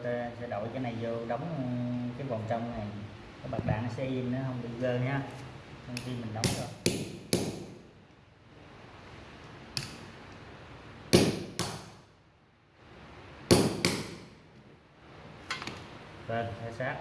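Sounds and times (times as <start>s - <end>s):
hammer strikes on metal: 6.0s - 7.8s, 11.1s - 12.0s, 13.5s - 14.3s.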